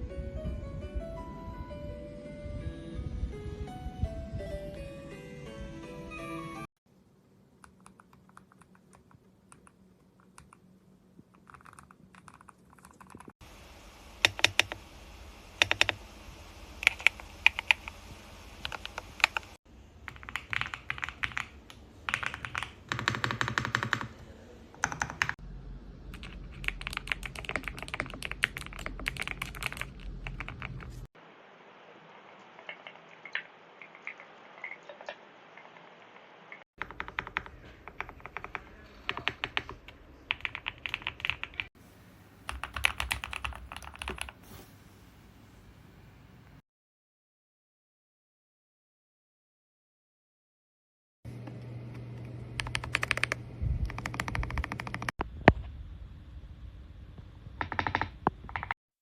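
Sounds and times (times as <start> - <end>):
mechanical keyboard typing: 11.4 - 13.3, 14.2 - 14.8, 15.6 - 16.0, 16.8 - 18.0, 18.6 - 24.2, 24.8 - 25.4, 26.1 - 31.0, 36.8 - 41.7, 42.5 - 44.4, 52.6 - 55.1, 57.6 - 58.8.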